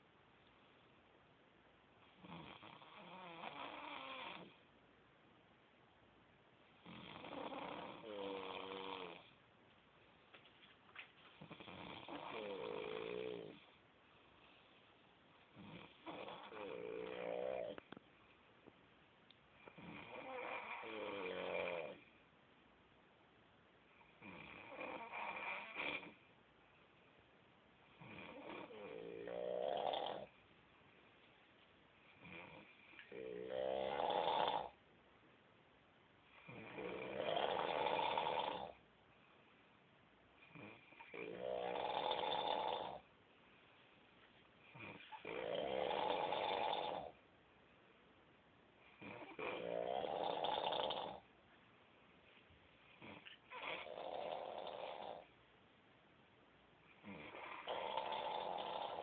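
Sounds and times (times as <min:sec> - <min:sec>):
man snoring: 0:02.2 - 0:04.5, 0:06.8 - 0:09.3, 0:11.5 - 0:13.6, 0:15.6 - 0:17.8, 0:19.6 - 0:22.0, 0:24.2 - 0:26.2, 0:28.0 - 0:30.3, 0:32.2 - 0:34.8, 0:36.4 - 0:38.8, 0:40.6 - 0:43.0, 0:44.8 - 0:47.2, 0:49.0 - 0:51.2, 0:53.0 - 0:55.3, 0:57.0 - 0:59.0.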